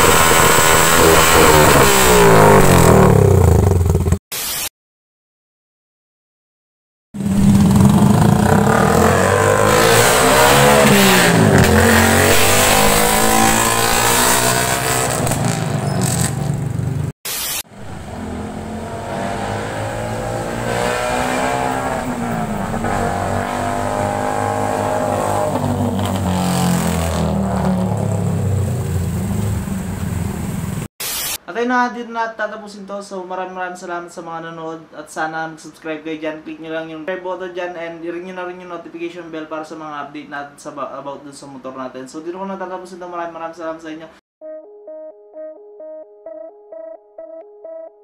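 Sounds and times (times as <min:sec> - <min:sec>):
motorcycle revving and accelerating: 0:00.0 - 0:04.2, 0:07.2 - 0:17.1, 0:17.7 - 0:30.9.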